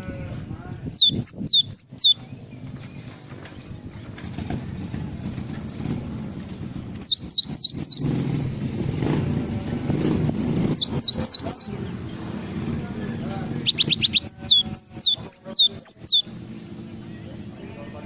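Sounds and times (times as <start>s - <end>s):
low rumble of background noise: 0.0s - 18.0s
songbird whistling calls: 1.0s - 2.3s, 7.0s - 8.2s, 10.7s - 11.8s, 13.6s - 16.3s.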